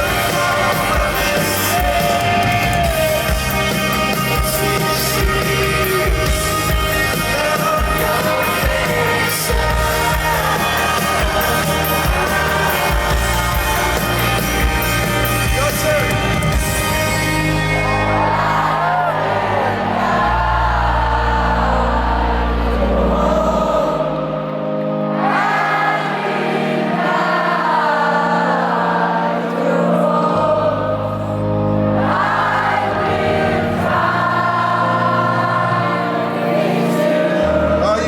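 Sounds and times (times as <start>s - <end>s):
live band playing: 0.0s - 19.7s
stadium crowd singing along: 0.0s - 38.0s.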